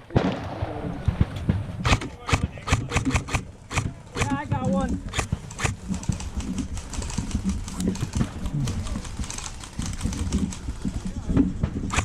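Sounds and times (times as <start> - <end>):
sharp clicks: 1.8 - 11.0.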